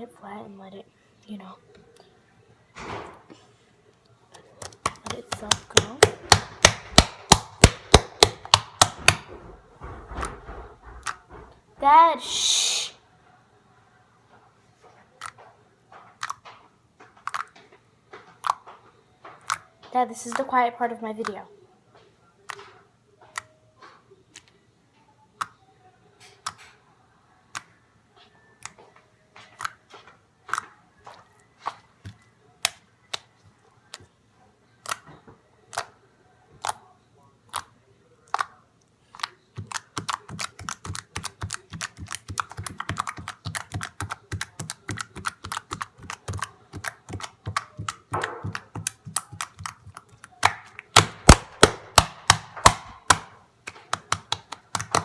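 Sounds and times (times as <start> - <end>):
slime clicking and popping: 17.2 - 17.6, 18.4 - 18.6, 38.3 - 55.0.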